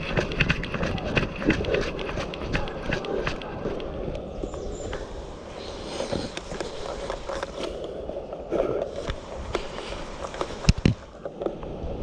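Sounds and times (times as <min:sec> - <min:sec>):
footsteps on rough ground: 0:00.0 - 0:05.0, 0:05.6 - 0:11.2
clothing and gear rustling: 0:04.4 - 0:11.4.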